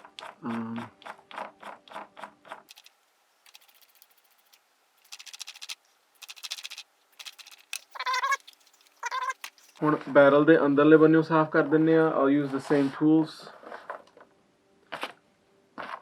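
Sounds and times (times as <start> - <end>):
brush scrubbing metal: 3.5 - 9.8.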